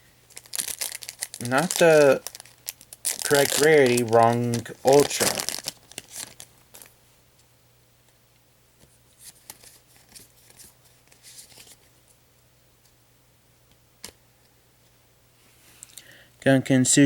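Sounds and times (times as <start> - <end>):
low steady hum: 0.0 - 11.2.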